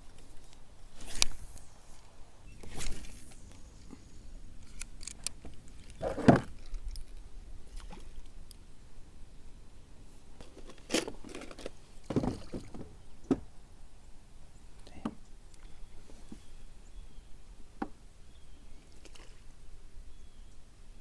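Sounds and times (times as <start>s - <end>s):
fishing gear clicks and rattles: 0.1s - 8.6s, 10.4s - 11.8s.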